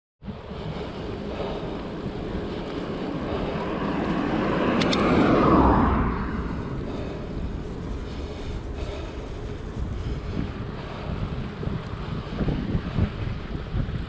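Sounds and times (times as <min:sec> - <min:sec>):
wind and road noise: 0:00.2 - 0:14.0
motor vehicle passing: 0:00.3 - 0:14.0
quick clicks: 0:04.8 - 0:05.2.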